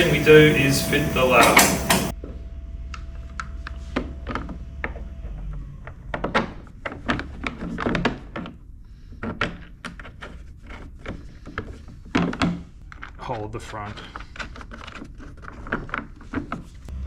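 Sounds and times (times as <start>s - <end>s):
tools and hardware clicking and knocking: 0.0s - 2.1s
low hum: 0.0s - 7.4s.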